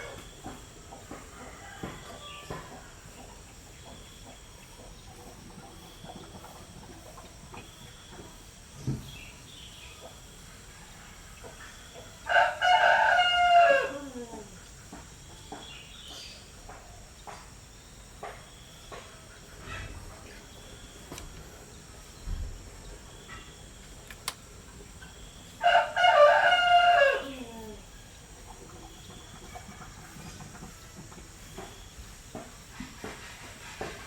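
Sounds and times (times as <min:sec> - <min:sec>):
rooster crowing: 0:01.1 - 0:03.1, 0:12.2 - 0:14.6, 0:25.6 - 0:27.9.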